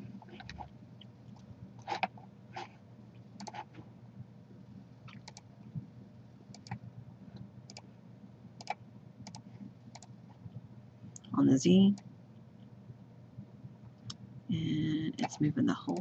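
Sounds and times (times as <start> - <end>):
faint low hum: 0.0 - 16.0
computer mouse clicking: 3.4 - 3.7, 5.1 - 5.5, 6.5 - 6.8, 7.4 - 7.9, 8.6 - 10.2.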